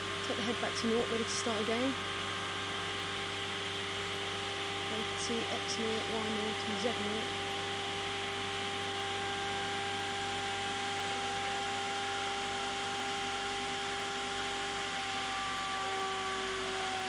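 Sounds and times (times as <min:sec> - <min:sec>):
router machine whining: 0:03.7 - 0:17.0.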